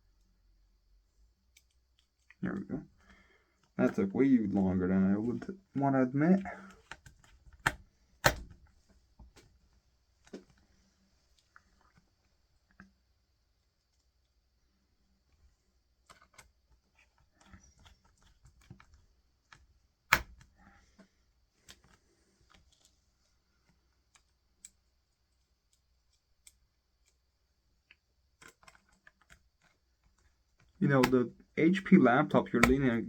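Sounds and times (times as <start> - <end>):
laptop parts clicking and rattling: 6.5 - 10.8, 15.9 - 31.3.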